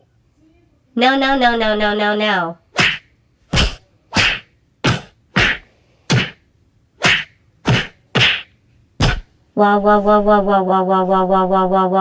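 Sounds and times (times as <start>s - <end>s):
sharp slap: 2.8s - 6.4s, 7.0s - 9.3s.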